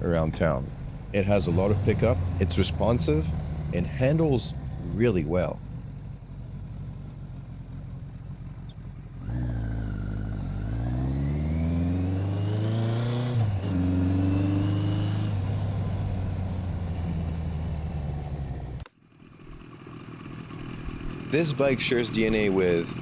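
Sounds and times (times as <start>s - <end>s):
motorcycle engine accelerating: 0.0s - 23.0s.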